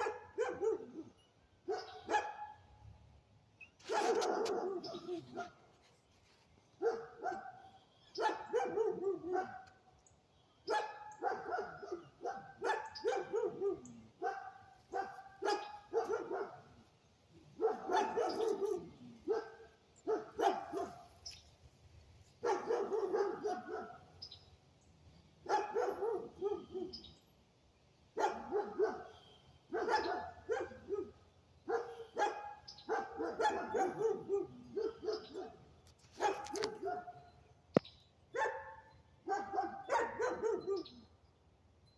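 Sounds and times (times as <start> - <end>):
dog barking: 0.0 - 2.6, 3.8 - 5.6, 6.8 - 9.8, 10.7 - 16.7, 17.6 - 21.1, 22.4 - 24.2, 25.4 - 27.0, 28.2 - 35.6, 36.2 - 37.2, 38.3 - 41.0.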